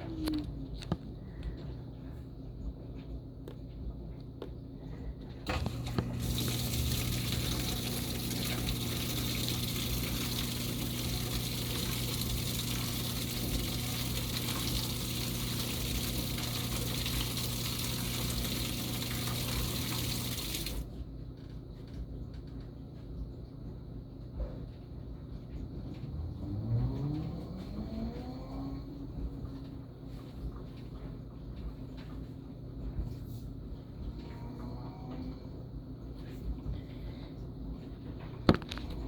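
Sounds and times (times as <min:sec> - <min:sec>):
steady electrical hum: 0:00.0 - 0:24.4
washing machine running water: 0:00.0 - 0:39.0.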